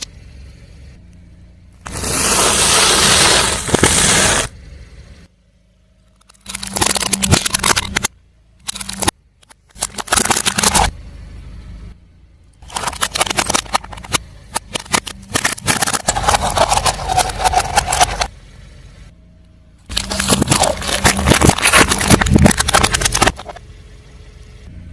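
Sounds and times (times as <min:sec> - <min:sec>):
low engine hum: 0:00.0 - 0:24.9
tyre crushing crunchy objects: 0:01.9 - 0:04.5, 0:19.9 - 0:23.6.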